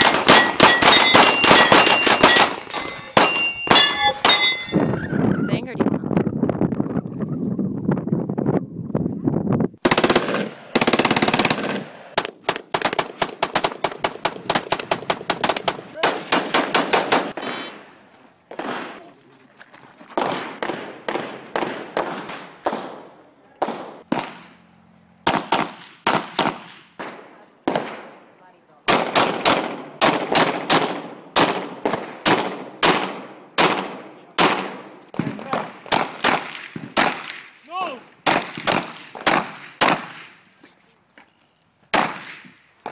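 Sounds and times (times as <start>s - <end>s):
gunshots: 0.0s - 4.5s, 9.8s - 17.9s, 18.5s - 19.1s, 20.2s - 24.6s, 25.2s - 28.2s, 28.8s - 37.6s, 38.2s - 40.4s, 41.9s - 42.9s.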